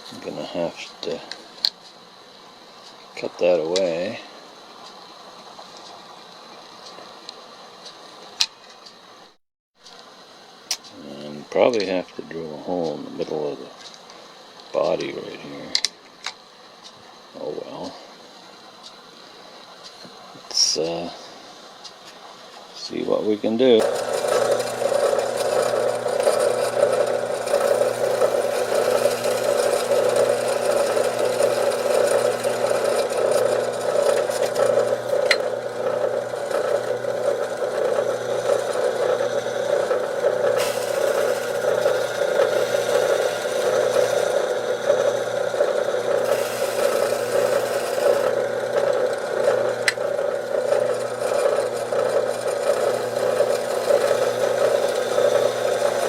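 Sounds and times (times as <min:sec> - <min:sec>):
small electric power tool cutting plastic: 0:23.8 - 0:56.0.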